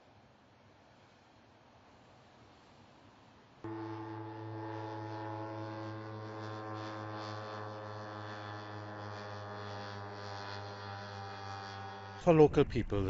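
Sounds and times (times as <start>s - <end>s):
drone engine whining: 3.7s - 12.6s.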